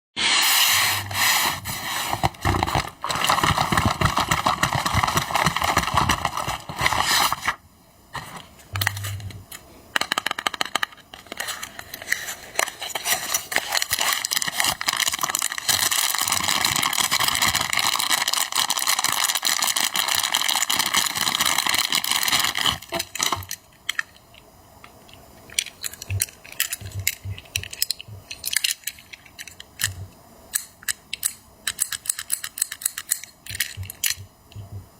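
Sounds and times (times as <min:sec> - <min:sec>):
packaging crinkling and rustling: 0:01.5 - 0:07.6, 0:10.0 - 0:24.2.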